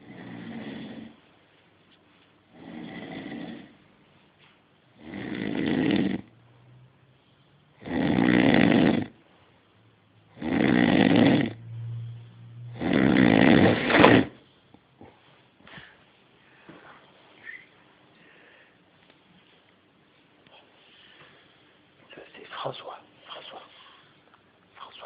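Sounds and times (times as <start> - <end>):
loud snoring: 0.0 - 1.2, 2.5 - 3.8, 5.0 - 6.3, 7.8 - 9.2, 10.3 - 14.4
faint low hum: 0.0 - 25.0.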